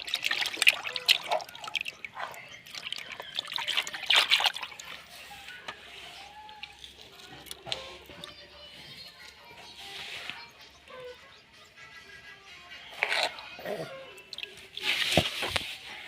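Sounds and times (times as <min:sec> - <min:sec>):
shallow water splashing: 0:00.0 - 0:08.2, 0:14.2 - 0:15.8.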